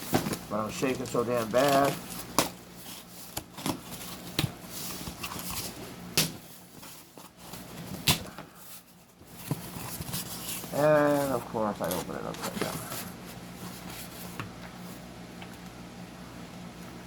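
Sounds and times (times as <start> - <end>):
package rustling: 0.0 - 5.8, 8.8 - 13.2.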